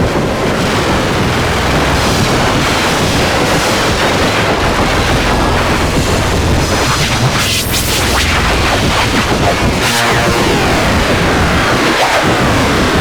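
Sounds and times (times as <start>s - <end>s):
distorted static noise music: 0.0s - 13.0s
shrill high-pitched sweep: 4.4s - 11.2s.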